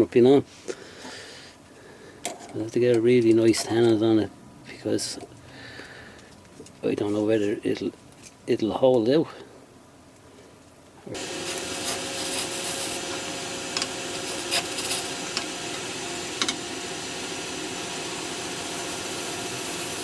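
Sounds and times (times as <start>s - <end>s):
gouge scraping hiss: 11.1s - 20.0s
wood lathe humming: 11.1s - 20.0s.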